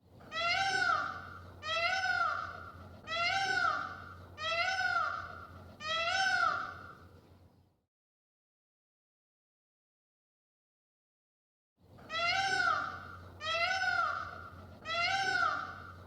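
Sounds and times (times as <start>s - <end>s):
animal calling: 0.2s - 7.0s, 12.1s - 16.0s.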